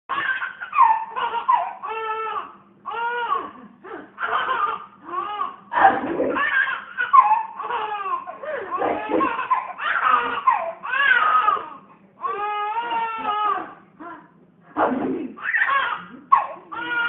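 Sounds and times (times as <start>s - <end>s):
baby laughing: 0.1s - 3.6s, 4.2s - 11.6s.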